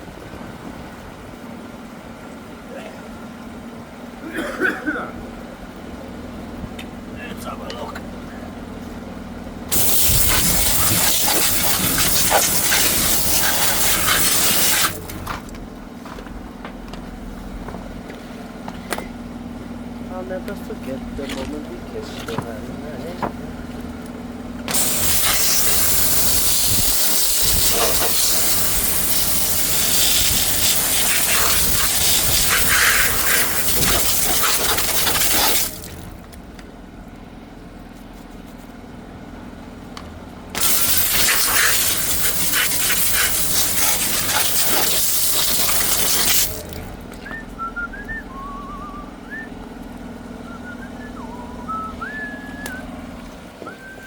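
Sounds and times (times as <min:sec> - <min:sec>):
engine droning: 0:00.0 - 0:54.0
high-pressure water spray hissing: 0:09.7 - 0:15.3, 0:24.7 - 0:36.2, 0:40.6 - 0:47.0
person whistling: 0:47.2 - 0:49.6, 0:50.4 - 0:52.9, 0:53.6 - 0:54.0.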